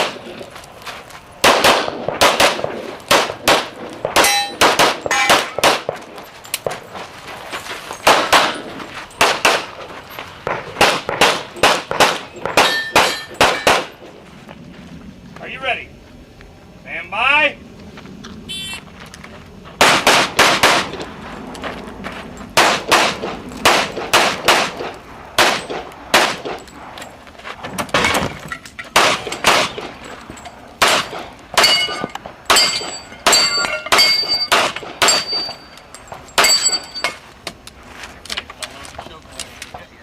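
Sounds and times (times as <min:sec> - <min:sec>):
pistol shots: 0:01.4 - 0:06.0, 0:08.0 - 0:09.8, 0:10.4 - 0:14.0, 0:19.8 - 0:21.0, 0:22.6 - 0:26.6, 0:28.9 - 0:30.0, 0:30.8 - 0:35.6
metallic ring of steel targets: 0:04.2 - 0:05.6, 0:11.5 - 0:14.0, 0:27.9 - 0:37.2.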